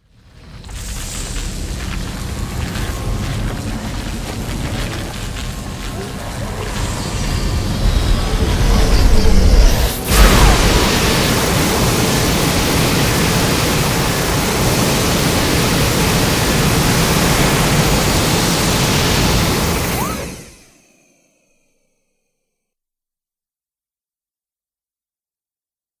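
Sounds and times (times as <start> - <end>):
monster breath blast and rushing: 0.4 - 12.8.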